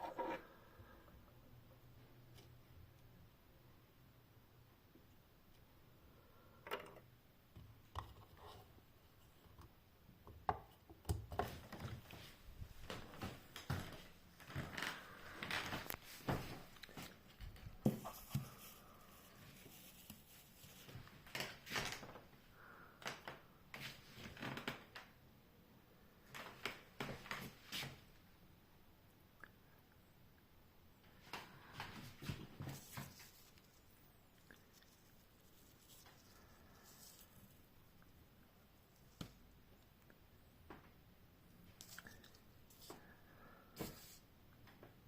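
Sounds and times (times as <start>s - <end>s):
rubbing sounds: 14.9s - 21.2s, 32.0s - 38.2s.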